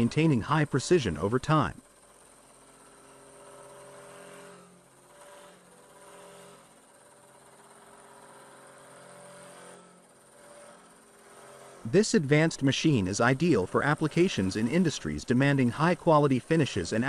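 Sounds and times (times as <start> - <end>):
machine motor whine: 0.0 - 17.0.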